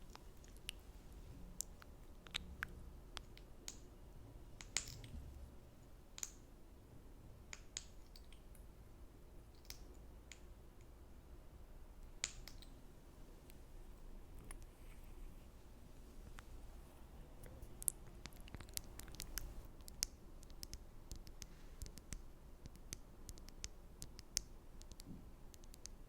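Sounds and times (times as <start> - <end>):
wet mouth clicks and lip smacks: 1.6 - 3.5, 17.8 - 23.6.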